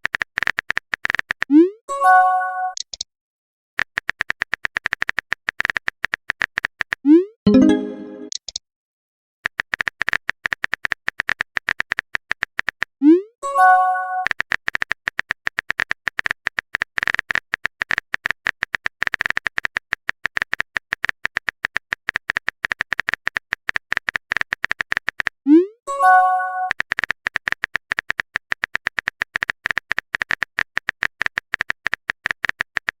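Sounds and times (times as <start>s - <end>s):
phone keyboard typing clicks: 3.8s - 8.6s, 26.7s - 33.0s.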